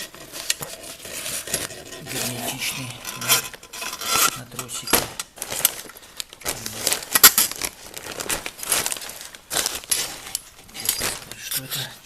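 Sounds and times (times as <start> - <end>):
metallic clinking and rattling: 9.6 - 11.6.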